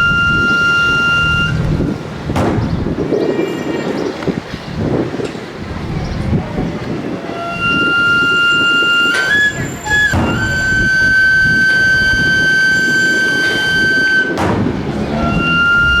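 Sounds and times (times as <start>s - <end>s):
shawm playing reedy melody: 7.2s - 16.0s.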